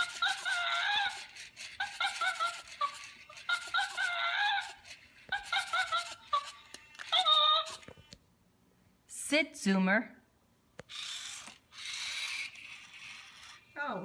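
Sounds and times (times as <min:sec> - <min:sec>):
robot toy electronic chimp chatter: 0:00.0 - 0:07.9.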